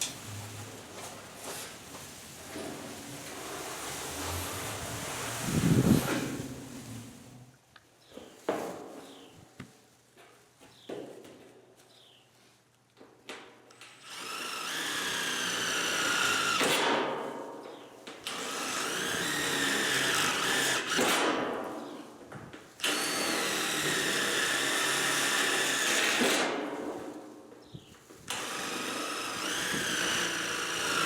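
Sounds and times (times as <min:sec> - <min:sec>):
power drill whining through metal: 0:13.8 - 0:17.0, 0:18.2 - 0:21.3, 0:22.8 - 0:26.5, 0:28.3 - 0:31.0.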